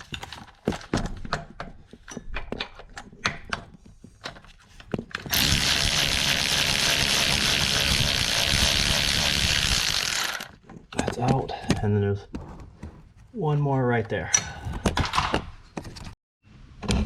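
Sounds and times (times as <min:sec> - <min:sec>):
power ratchet whirring: 0:05.3 - 0:10.6.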